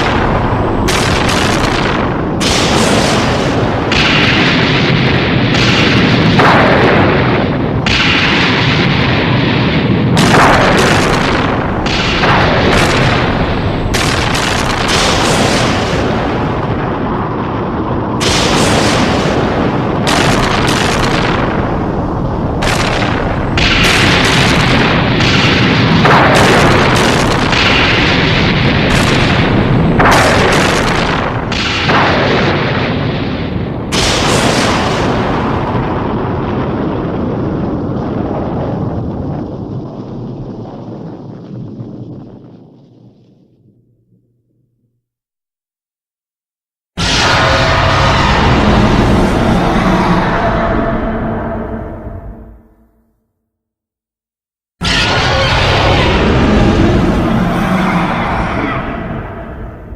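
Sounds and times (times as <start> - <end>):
monster roars and blasts: 0.0 - 33.2, 47.0 - 52.8, 54.8 - 59.9
constant low rumble: 0.0 - 45.0, 47.0 - 52.9, 54.9 - 59.9
monster rumbling blast with hiss: 47.0 - 52.5, 54.8 - 59.9
falling swooshes: 47.0 - 52.9, 55.1 - 59.9.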